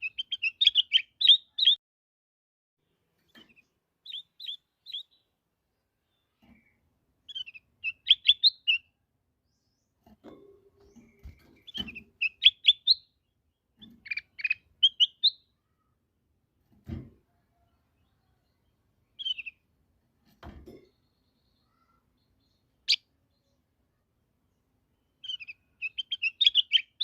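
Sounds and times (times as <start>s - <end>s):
bird chirping: 0.0s - 1.8s, 2.8s - 16.0s, 17.5s - 19.8s, 20.7s - 27.0s.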